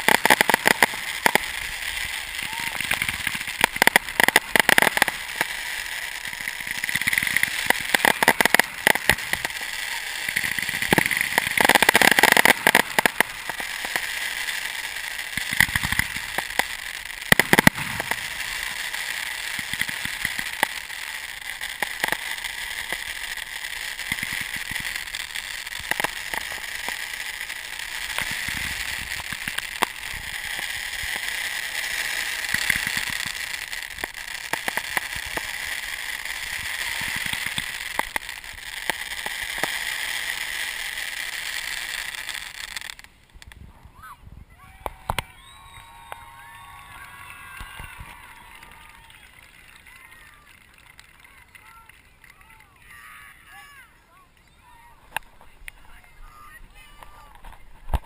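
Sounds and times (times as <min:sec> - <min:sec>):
heavy firework bangs: 0:00.0 - 0:43.0
fireworks crackling and popping: 0:00.0 - 0:58.0.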